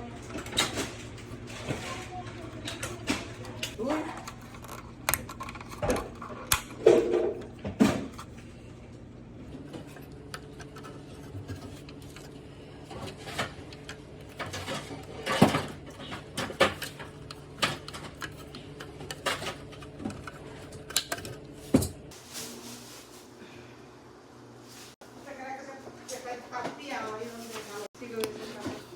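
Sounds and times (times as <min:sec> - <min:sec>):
steady low hum: 0:00.0 - 0:26.4.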